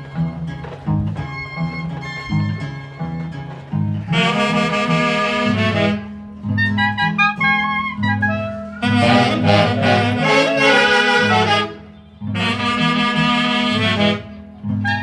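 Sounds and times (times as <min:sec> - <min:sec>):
saxophones and clarinets melody: 0:04.0 - 0:15.0
repeating bass line: 0:05.4 - 0:13.3.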